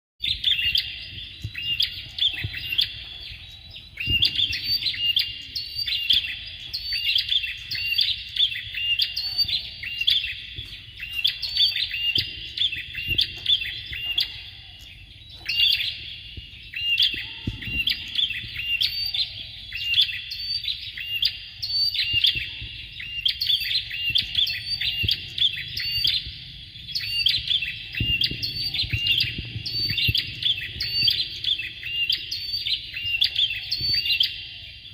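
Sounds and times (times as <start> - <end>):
birds chattering song: 0.2 - 34.9.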